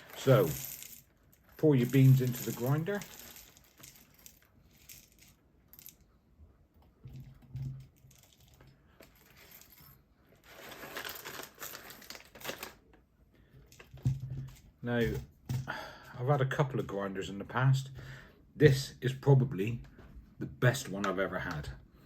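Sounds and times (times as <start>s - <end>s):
coffee beans pouring into grinder: 0.0s - 1.0s, 1.6s - 3.6s, 10.5s - 12.6s.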